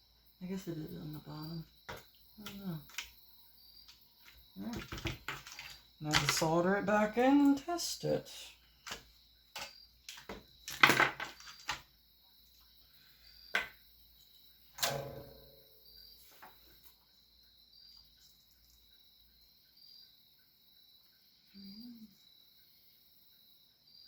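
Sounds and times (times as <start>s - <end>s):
cricket chirping: 0.0s - 24.0s
short metallic ring: 14.8s - 15.9s.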